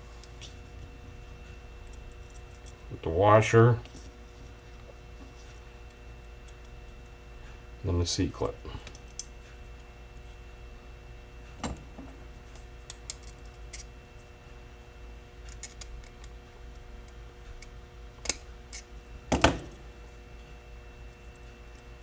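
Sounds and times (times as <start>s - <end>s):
small metal and plastic parts clicking: 15.5s - 16.3s.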